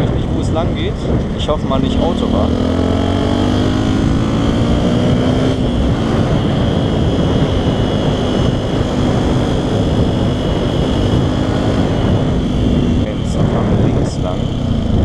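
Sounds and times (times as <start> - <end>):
motorcycle engine while riding: 0.0 - 15.0
wind rush on microphone: 0.0 - 15.0.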